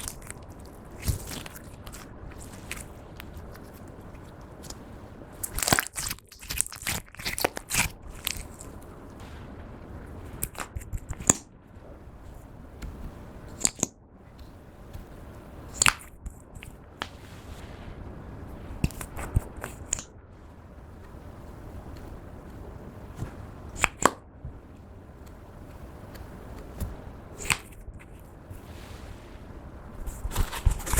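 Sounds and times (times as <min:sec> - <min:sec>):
slime crackling and popping: 0:00.0 - 0:08.9, 0:10.3 - 0:11.5, 0:12.8 - 0:15.0, 0:15.7 - 0:16.8, 0:18.8 - 0:20.1, 0:23.2 - 0:24.2, 0:26.8 - 0:28.2
slime squishing: 0:00.0 - 0:09.3, 0:10.0 - 0:11.5, 0:12.2 - 0:17.5, 0:18.7 - 0:20.2, 0:21.0 - 0:29.1.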